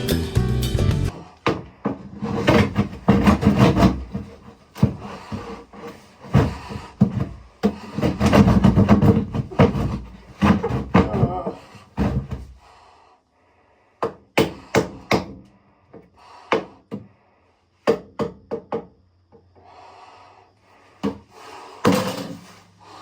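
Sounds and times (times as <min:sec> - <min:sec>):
background music: 0:00.0 - 0:01.1.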